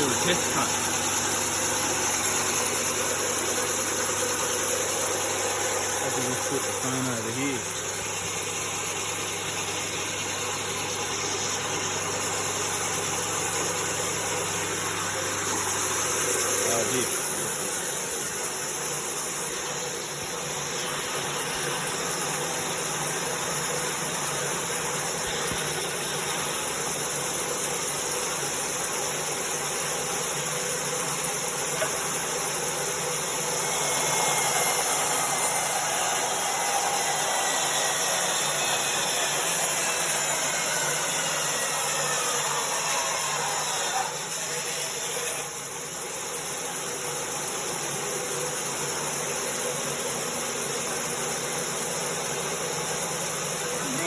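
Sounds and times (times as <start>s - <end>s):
bandsaw cutting wood: 0.0s - 4.6s, 5.2s - 18.4s, 33.4s - 45.7s, 53.8s - 54.0s.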